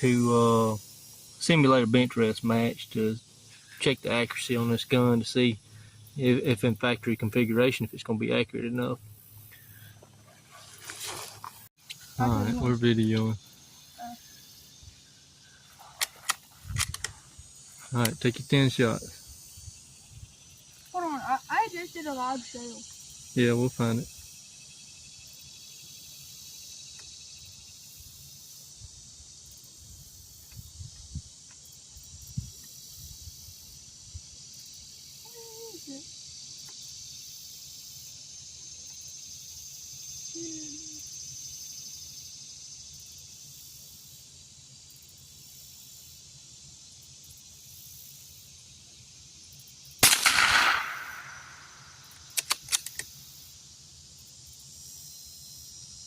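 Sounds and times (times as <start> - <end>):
crickets chirring: 0.0 - 56.0
rifle shot: 50.0 - 52.9
quick clicks: 52.1 - 53.1.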